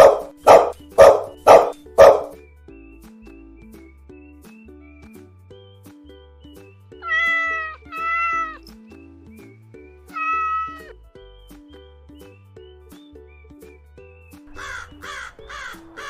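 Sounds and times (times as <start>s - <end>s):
light background music: 0.0s - 16.0s
animal calling: 7.0s - 8.6s, 10.1s - 10.9s.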